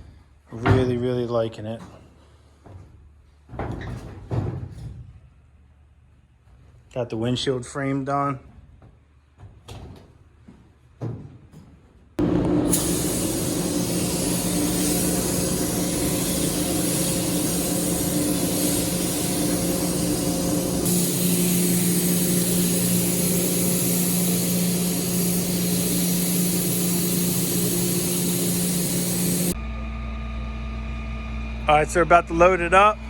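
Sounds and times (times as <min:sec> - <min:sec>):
spray gun air hiss: 0:12.2 - 0:29.6
fans humming: 0:12.2 - 0:33.0.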